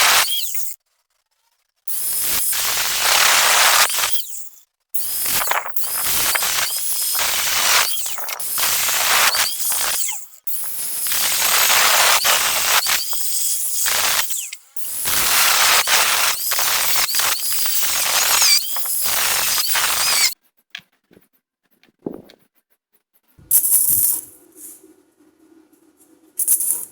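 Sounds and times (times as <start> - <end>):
electric welding bursts: 0.0 - 0.8, 1.9 - 20.4.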